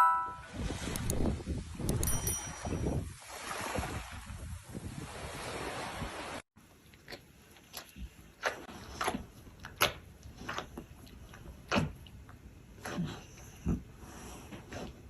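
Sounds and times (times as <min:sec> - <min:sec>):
wind noise: 0:00.4 - 0:06.2.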